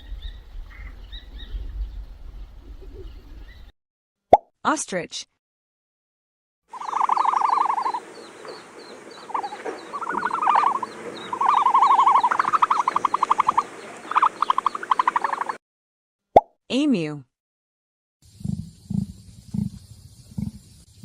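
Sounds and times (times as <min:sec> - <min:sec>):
rapid pulsing animal trills: 0:06.7 - 0:15.6, 0:18.3 - 0:20.8.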